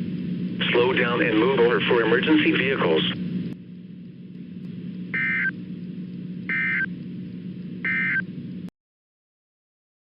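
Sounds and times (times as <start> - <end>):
steady low hum: 0.0 - 8.7
two-tone digital data buzz: 5.1 - 5.6, 6.5 - 6.9, 7.8 - 8.3.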